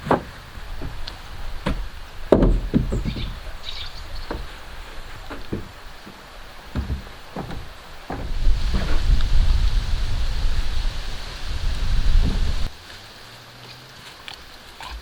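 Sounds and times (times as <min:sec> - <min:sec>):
wood knocks and thuds: 0:00.0 - 0:09.6.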